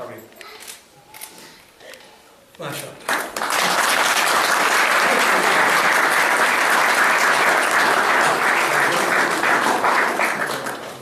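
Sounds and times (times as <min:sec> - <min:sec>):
people applauding: 0:03.0 - 0:11.0.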